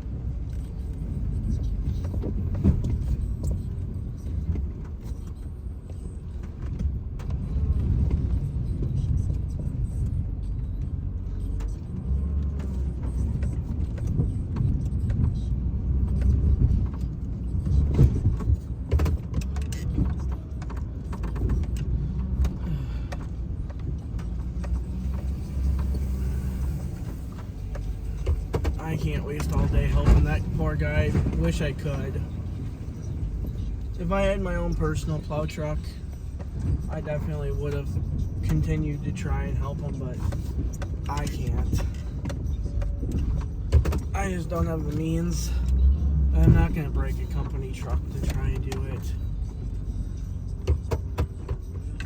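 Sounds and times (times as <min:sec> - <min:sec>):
truck engine under load: 0:00.0 - 0:52.0
rattles and knocks: 0:12.5 - 0:34.0.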